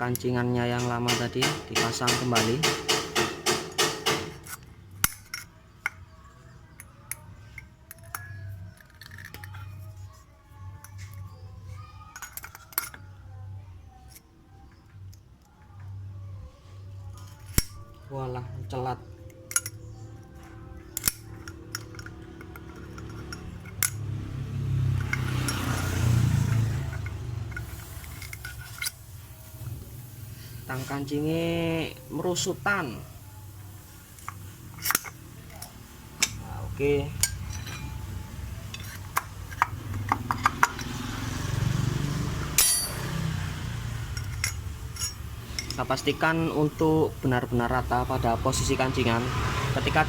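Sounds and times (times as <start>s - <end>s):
metal clicks of circlip pliers: 6.8s - 9.6s, 19.2s - 24.1s, 34.1s - 36.4s, 44.1s - 46.1s
metallic clicks of pliers: 20.9s - 24.0s.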